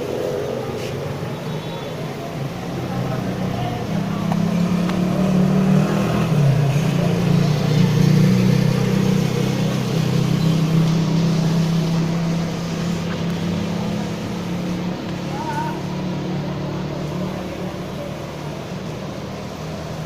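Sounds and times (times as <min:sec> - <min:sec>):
hiss of noise: 0:00.0 - 0:07.3, 0:08.4 - 0:16.0
loud engine-like drone: 0:00.0 - 0:20.0.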